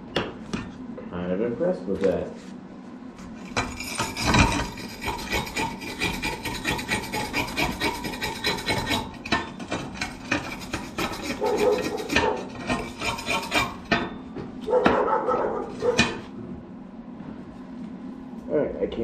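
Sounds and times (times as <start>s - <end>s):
wire brush scraping metal: 3.4s - 14.2s.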